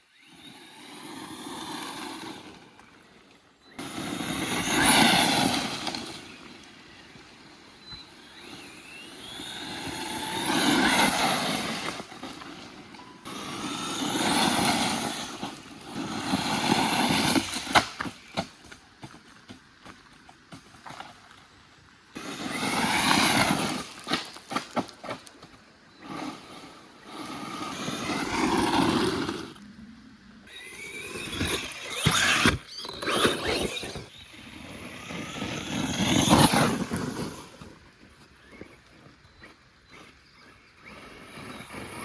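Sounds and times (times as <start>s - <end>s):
electric motor whine: 0.0s - 18.3s, 22.2s - 24.3s, 25.9s - 42.0s
tyres spinning on loose ground: 22.2s - 25.4s, 26.0s - 29.6s, 30.4s - 38.9s.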